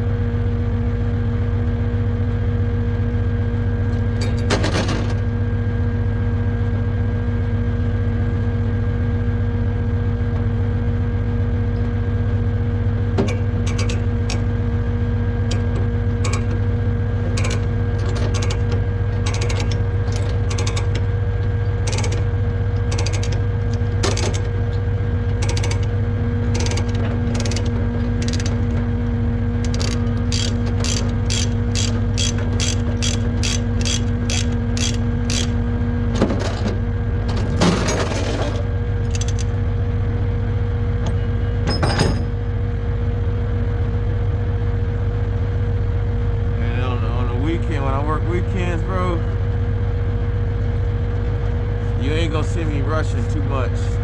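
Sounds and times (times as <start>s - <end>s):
diesel engine idling: 10.6s - 41.6s, 42.4s - 54.0s
ratchet clicks: 13.3s - 14.5s, 15.5s - 16.6s, 17.3s - 21.0s, 21.8s - 24.5s, 25.4s - 28.7s, 29.6s - 35.6s, 39.1s - 39.5s.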